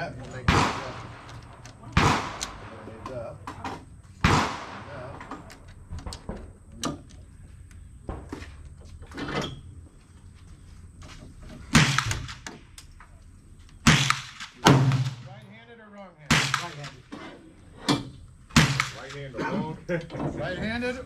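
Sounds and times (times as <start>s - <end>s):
gunshots: 0.4s - 3.0s, 4.2s - 5.2s, 11.7s - 12.5s, 13.8s - 15.4s, 16.3s - 17.0s, 18.5s - 19.3s.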